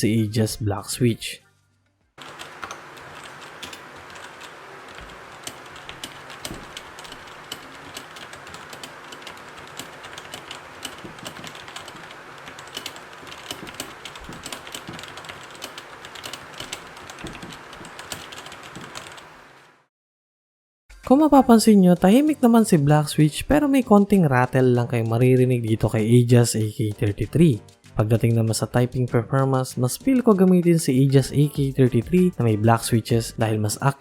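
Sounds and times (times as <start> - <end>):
mechanical keyboard typing: 2.2 - 19.4.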